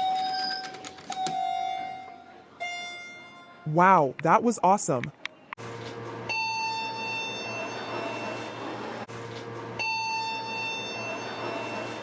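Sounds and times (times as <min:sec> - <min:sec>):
elevator chime: 0:06.3 - 0:09.0, 0:09.8 - 0:12.0.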